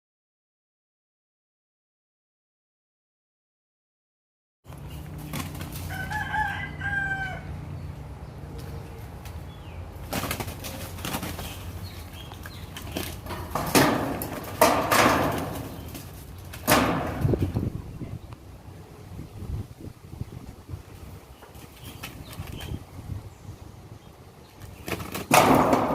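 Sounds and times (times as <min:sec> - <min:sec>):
wing flapping and scuffling: 0:04.7 - 0:06.6, 0:08.5 - 0:17.8, 0:20.8 - 0:23.2, 0:24.4 - 0:25.9
rooster calls: 0:05.8 - 0:07.7.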